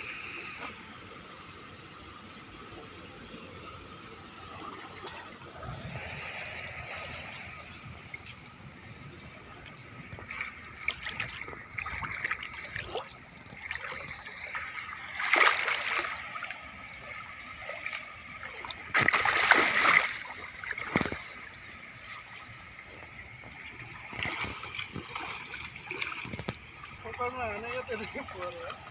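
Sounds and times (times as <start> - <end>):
shallow water splashing: 0.0 - 28.9.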